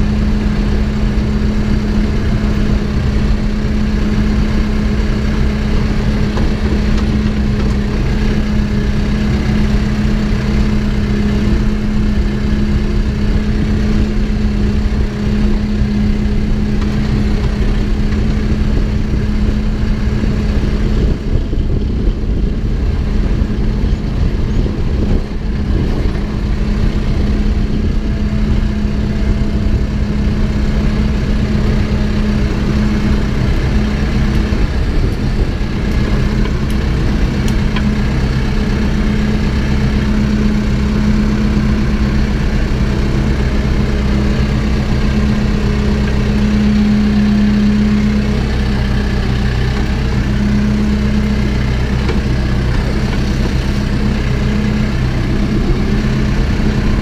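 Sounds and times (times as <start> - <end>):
backhoe engine running: 0.0 - 57.0.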